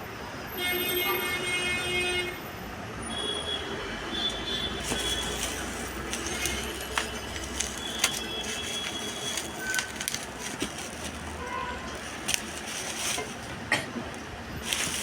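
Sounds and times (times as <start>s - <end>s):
low traffic rumble: 2.2s - 15.0s
handling clicks and rustling: 4.8s - 15.0s.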